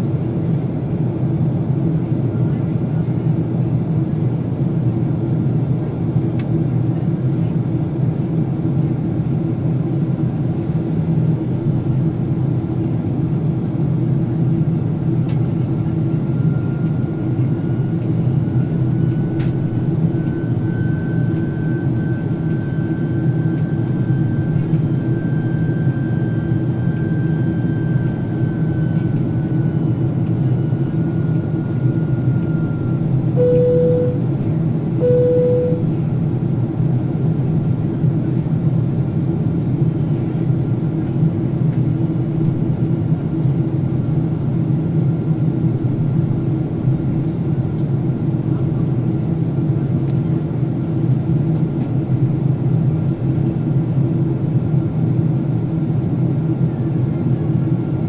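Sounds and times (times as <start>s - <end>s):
airliner cabin engine drone: 0.0s - 58.0s
faint high whine: 32.4s - 34.3s, 35.0s - 36.0s.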